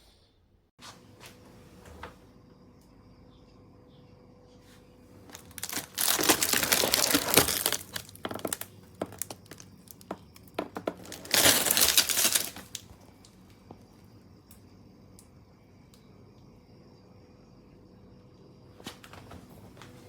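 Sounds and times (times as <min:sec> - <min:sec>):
packaging crinkling: 0:05.2 - 0:12.9.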